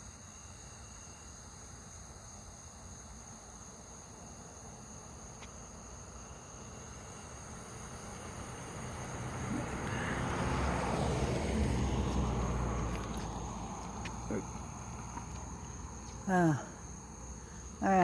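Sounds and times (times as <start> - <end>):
motor vehicle passing by: 7.6 - 16.0.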